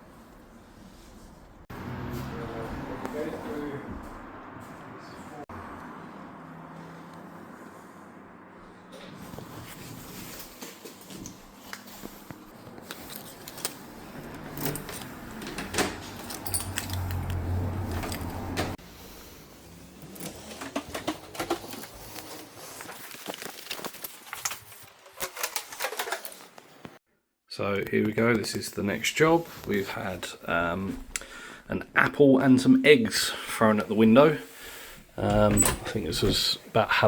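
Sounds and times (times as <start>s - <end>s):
keys and lock hardware rattling: 13.0s - 18.7s, 35.3s - 36.0s.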